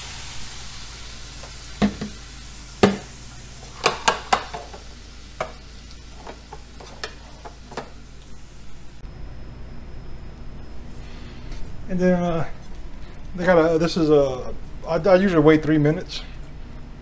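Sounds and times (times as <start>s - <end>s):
meat sizzling in a skillet: 0.0s - 9.0s.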